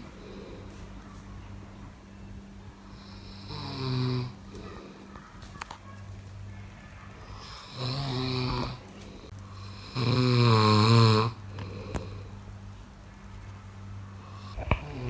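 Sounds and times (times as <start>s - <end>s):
person snoring: 9.6s - 12.3s, 14.3s - 15.0s.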